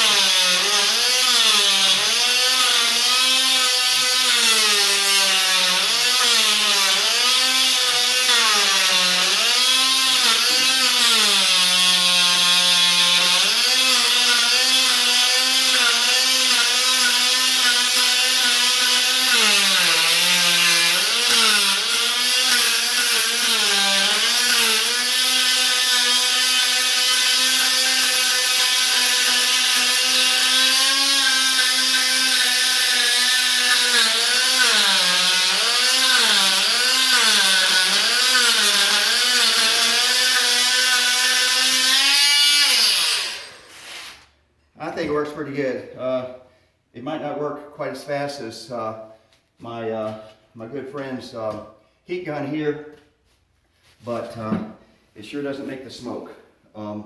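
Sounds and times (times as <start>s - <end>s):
oscillating multi-tool scraping flooring: 0.0s - 44.4s.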